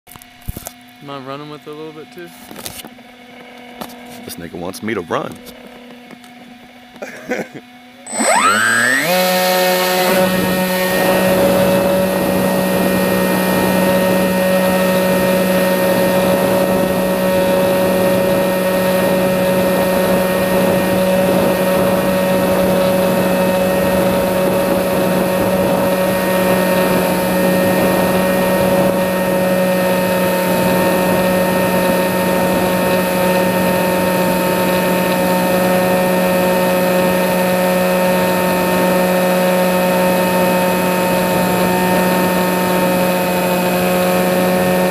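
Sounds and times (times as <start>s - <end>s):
electric motor and propeller whining: 0.1s - 44.9s.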